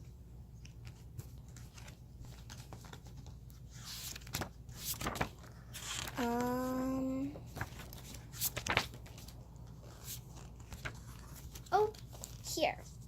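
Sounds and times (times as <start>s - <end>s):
book pages rustling: 0.0s - 13.0s.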